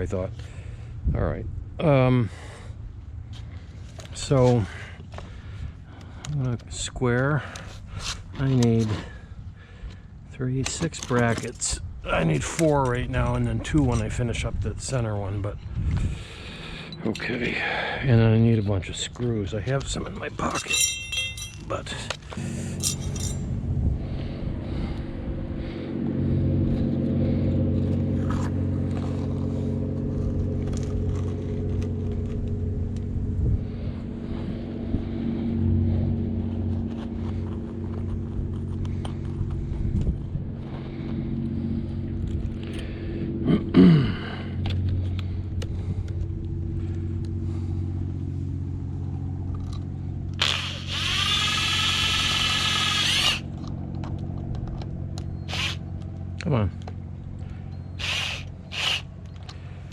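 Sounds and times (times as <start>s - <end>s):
low hum: 7.4s - 59.9s
power drill whining: 50.4s - 53.5s, 55.4s - 55.8s, 57.9s - 59.1s.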